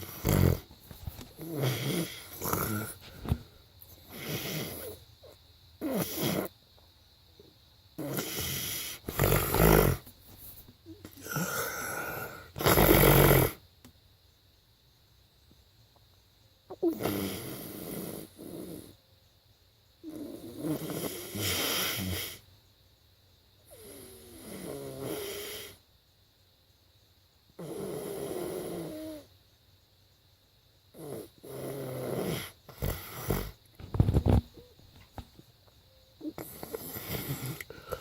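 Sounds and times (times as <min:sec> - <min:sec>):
man snoring: 0:00.0 - 0:00.7, 0:01.4 - 0:03.4, 0:04.1 - 0:05.0, 0:05.8 - 0:06.5, 0:08.0 - 0:10.1, 0:11.1 - 0:13.6, 0:16.8 - 0:18.9, 0:20.1 - 0:22.4, 0:23.7 - 0:25.8, 0:27.6 - 0:29.2, 0:31.0 - 0:33.6, 0:36.2 - 0:38.0.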